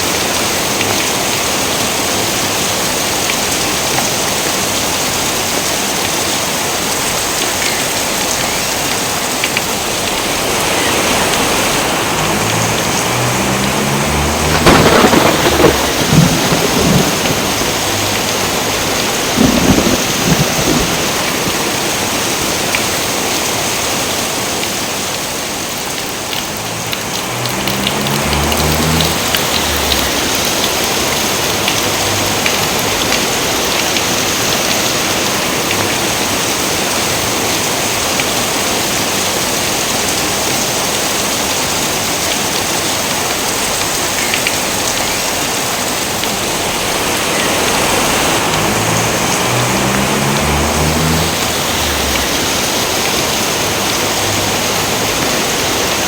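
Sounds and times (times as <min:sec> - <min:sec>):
heavy rain falling: 0:00.0 - 0:56.0
thunder rumbling: 0:08.0 - 0:22.4, 0:26.3 - 0:33.4, 0:46.2 - 0:55.7.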